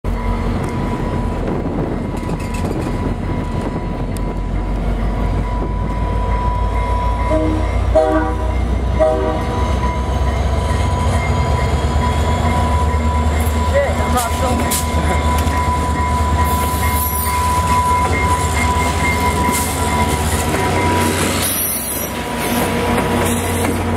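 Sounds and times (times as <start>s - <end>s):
diesel locomotive engine rumbling: 0.0s - 23.9s
train horn blasts: 7.2s - 9.8s.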